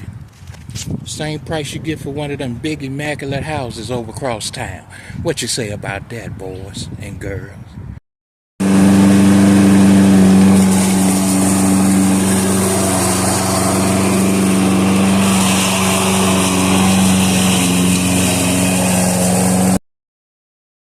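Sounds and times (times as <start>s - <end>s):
small gasoline engine running: 8.6s - 19.8s.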